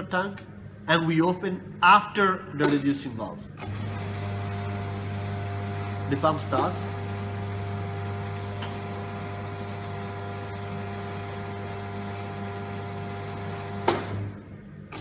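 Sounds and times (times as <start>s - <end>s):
pump motor humming: 3.6s - 14.1s.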